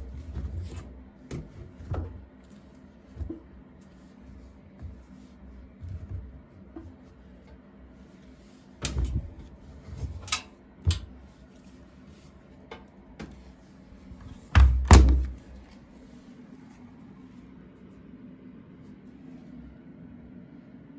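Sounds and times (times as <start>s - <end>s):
washing machine knocks and clunks: 0.0s - 2.4s, 3.2s - 3.5s, 8.8s - 11.2s, 14.2s - 15.6s.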